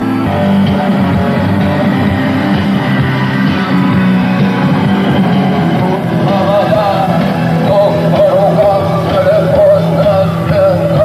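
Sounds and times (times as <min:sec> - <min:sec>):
electric guitar: 0:00.0 - 0:11.0
rock band playing: 0:00.0 - 0:11.0.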